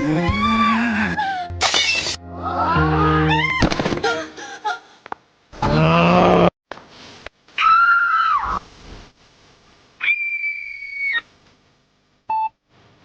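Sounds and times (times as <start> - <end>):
high pitched cry: 10.0 - 11.2.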